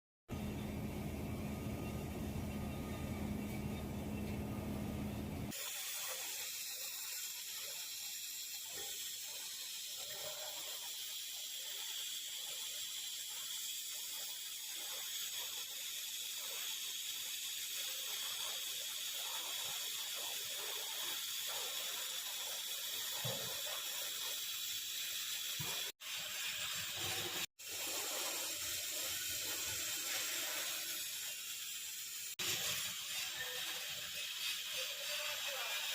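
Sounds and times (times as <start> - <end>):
fuller noise with low hum: 0.3 - 5.5
welding arc hissing: 0.5 - 35.9.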